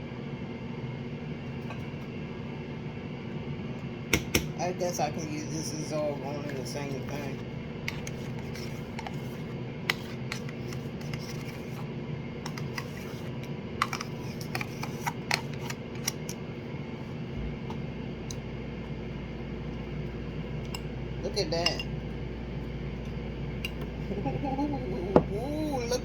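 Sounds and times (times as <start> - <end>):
steady low hum: 0.0 - 26.0
kitchen utensils clicking and scraping: 6.8 - 11.8, 12.5 - 16.4.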